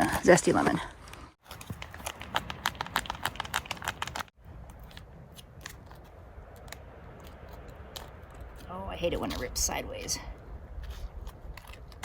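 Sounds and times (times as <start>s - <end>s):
foil pouch crinkling: 1.4s - 5.0s.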